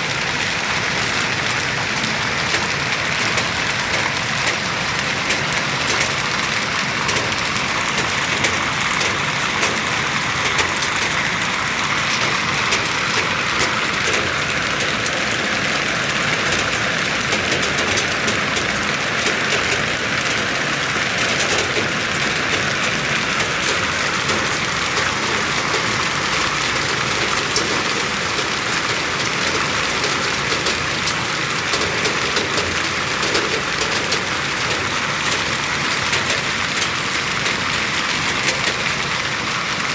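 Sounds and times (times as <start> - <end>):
hail striking hard surfaces: 0.0 - 39.9
heavy rain downpour: 0.0 - 39.9.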